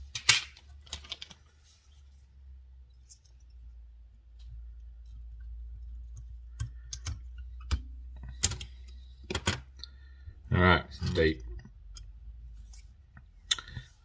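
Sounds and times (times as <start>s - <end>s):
tools clicking and tapping: 6.1s - 9.9s.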